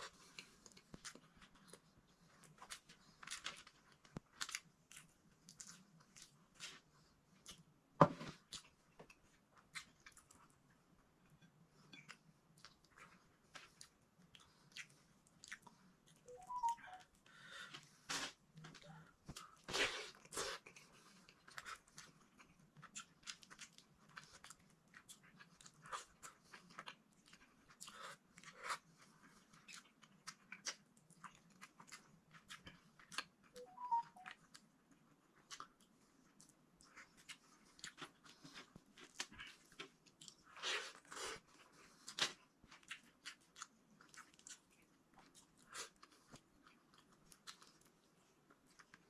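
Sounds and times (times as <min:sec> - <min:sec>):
person chewing wet crunches: 0:00.0 - 0:07.7, 0:11.9 - 0:16.3, 0:16.9 - 0:49.0.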